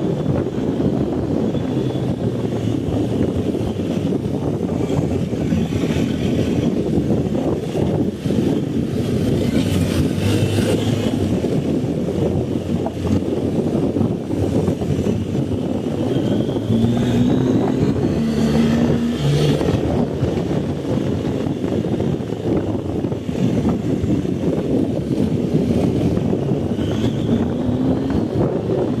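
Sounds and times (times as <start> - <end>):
motorcycle engine running: 0.0 - 29.0
wind rumble on microphone: 0.0 - 29.0.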